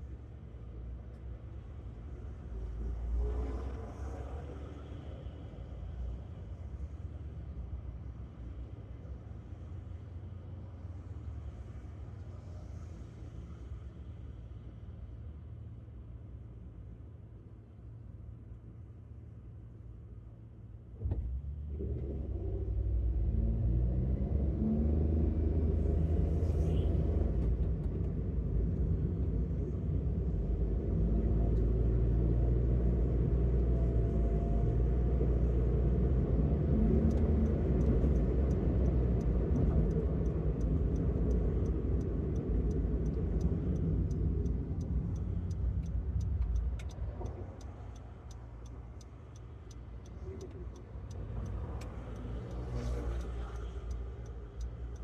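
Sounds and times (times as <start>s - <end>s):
cars passing: 32.4s - 55.0s
faint regular ticking: 36.6s - 55.0s.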